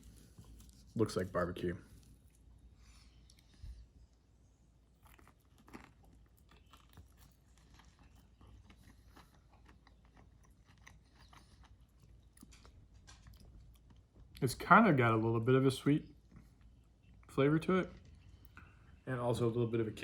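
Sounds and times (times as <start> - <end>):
chewing and biting: 4.8 - 14.4.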